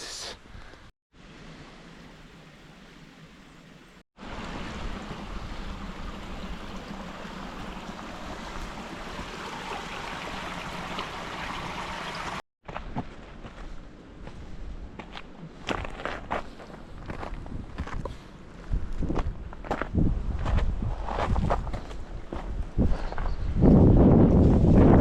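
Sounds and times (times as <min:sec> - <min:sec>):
loud rushing wind noise: 0:22.6 - 0:25.0.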